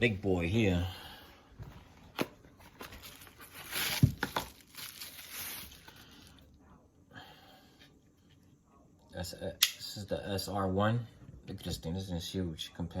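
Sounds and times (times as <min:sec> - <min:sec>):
knife handling rustling: 0:01.7 - 0:06.2.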